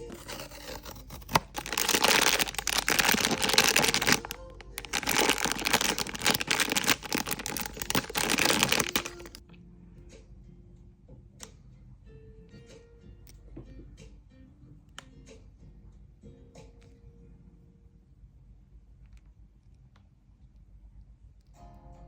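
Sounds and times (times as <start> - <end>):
plastic wrapper crinkling and tearing: 0.0 - 9.4
faint background music: 0.0 - 19.6, 20.6 - 22.0.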